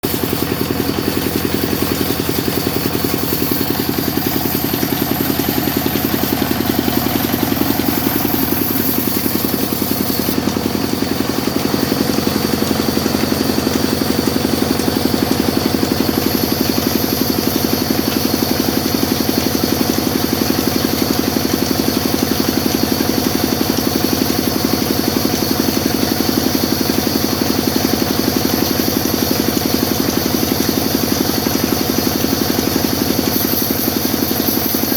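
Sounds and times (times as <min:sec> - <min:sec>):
sawmill machine drone: 0:00.0 - 0:34.9.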